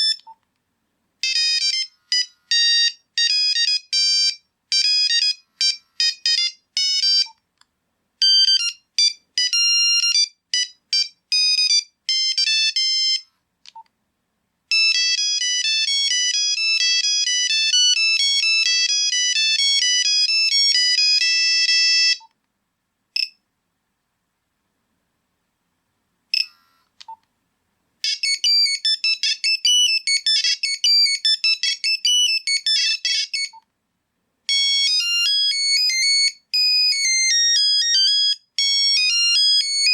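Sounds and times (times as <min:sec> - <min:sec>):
monophonic ringtone beeping tunes: 0:01.3 - 0:07.4, 0:14.7 - 0:22.2, 0:28.1 - 0:33.6, 0:34.5 - 0:39.9.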